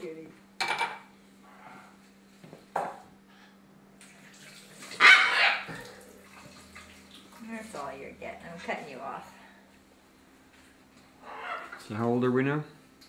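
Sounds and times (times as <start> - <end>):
parrot chick begging squawks: 5.0 - 5.8, 11.2 - 11.8.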